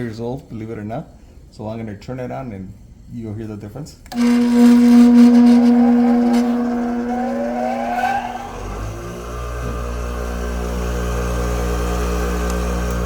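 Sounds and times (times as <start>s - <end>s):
bench grinder motor humming: 4.1s - 13.0s.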